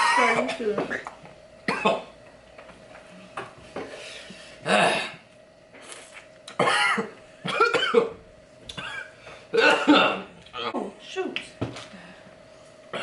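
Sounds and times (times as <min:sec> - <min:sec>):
person coughing: 0:00.0 - 0:01.0, 0:01.7 - 0:02.1, 0:04.6 - 0:05.2, 0:06.6 - 0:08.2, 0:08.8 - 0:10.9
faint steady hum: 0:00.0 - 0:13.0.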